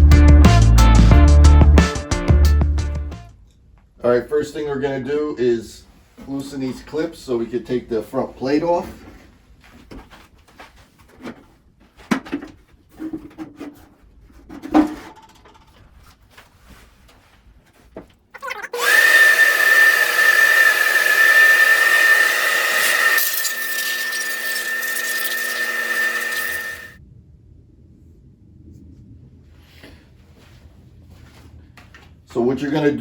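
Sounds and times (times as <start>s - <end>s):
small electric motor whining: 18.8s - 27.0s.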